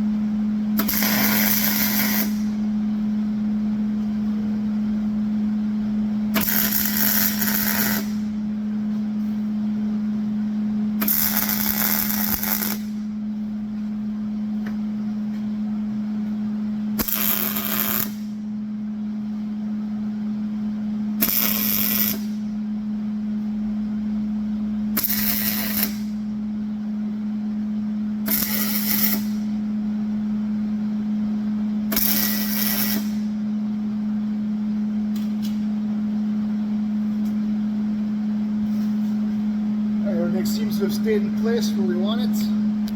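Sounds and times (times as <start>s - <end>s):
steady hum: 0.0s - 42.9s
crackling tack welds: 0.8s - 2.6s, 6.3s - 8.4s, 11.0s - 13.1s, 17.0s - 18.4s, 21.2s - 22.4s, 25.0s - 26.2s, 28.3s - 29.5s, 31.9s - 33.3s.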